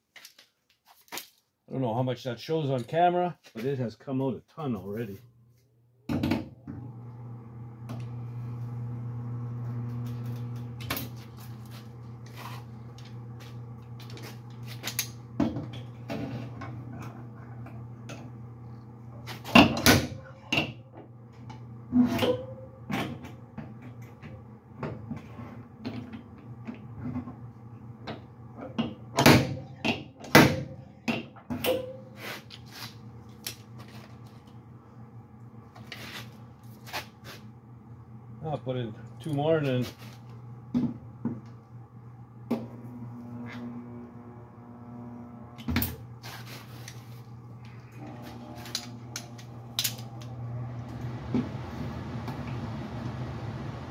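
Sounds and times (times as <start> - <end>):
stud welder humming: 6.8 - 20.5, 42.6 - 53.9.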